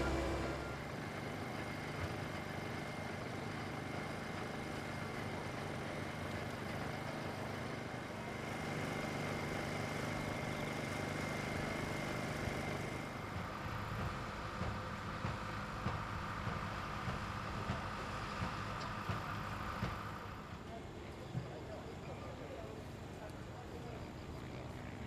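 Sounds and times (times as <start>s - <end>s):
thin high whine: 0.0s - 0.9s
engine running steadily: 0.0s - 25.0s.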